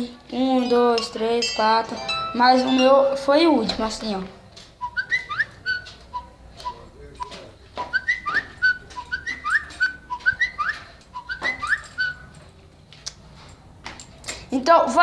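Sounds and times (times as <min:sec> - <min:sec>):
phone notification tone: 0:01.7 - 0:03.9.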